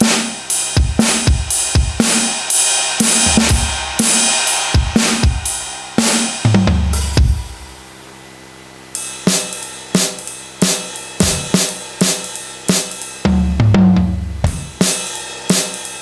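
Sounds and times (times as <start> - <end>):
electronic drum beat: 0.0 - 7.9, 9.0 - 16.0
cymbal: 0.0 - 16.0
deep tom hits: 6.4 - 7.7, 11.2 - 11.7, 13.3 - 14.8.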